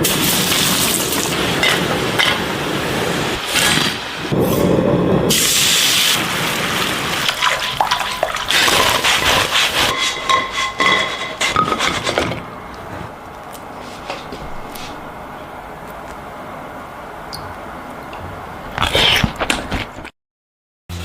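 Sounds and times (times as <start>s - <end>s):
utensils and dishes clinking: 7.4s - 12.4s.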